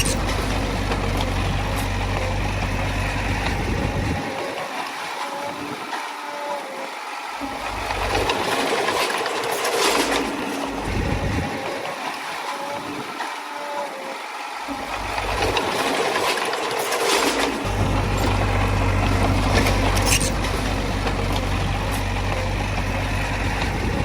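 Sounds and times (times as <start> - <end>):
bulldozer diesel engine clattering: 0.0 - 4.6, 7.5 - 11.9, 14.8 - 24.0.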